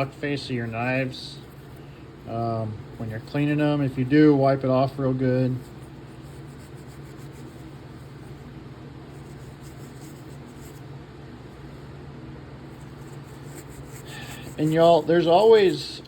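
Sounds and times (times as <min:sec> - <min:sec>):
cloth rubbing on a knife: 0:00.0 - 0:01.9, 0:05.5 - 0:10.9, 0:12.7 - 0:16.0
steady low hum: 0:00.0 - 0:16.0.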